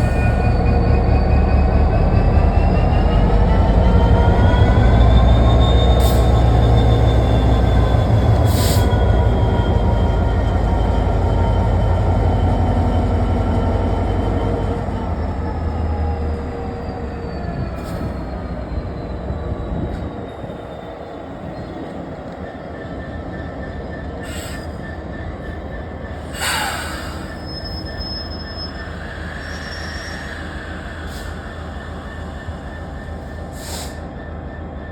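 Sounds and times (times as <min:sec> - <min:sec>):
diesel locomotive drone: 0:00.0 - 0:34.9
freight train rolling: 0:00.0 - 0:34.9
wheel squeal: 0:15.8 - 0:34.9.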